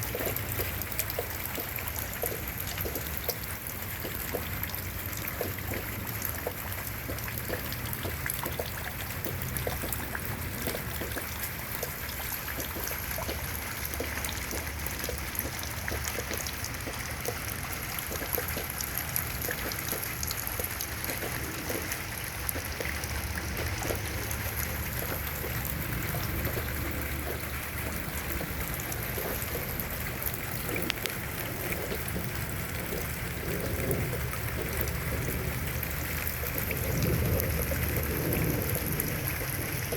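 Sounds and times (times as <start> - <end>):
raindrops ticking: 0.0 - 39.9
steady rain hiss: 16.6 - 39.9.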